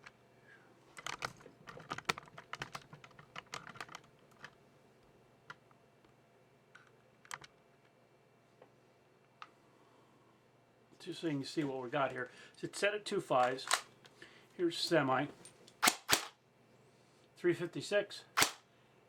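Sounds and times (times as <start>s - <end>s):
small clicks and taps: 1.0s - 4.6s, 5.5s - 8.0s.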